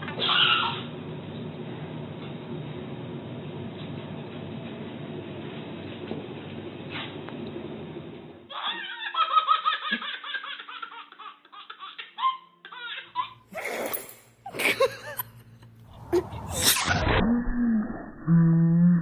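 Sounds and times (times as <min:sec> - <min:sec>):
hearty human laughter: 0:14.5 - 0:16.9.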